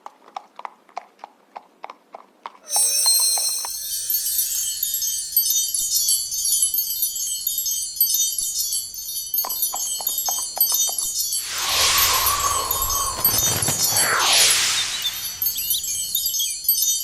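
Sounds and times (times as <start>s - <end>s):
tinkling magic shimmer: 2.7s - 7.4s, 11.2s - 16.9s.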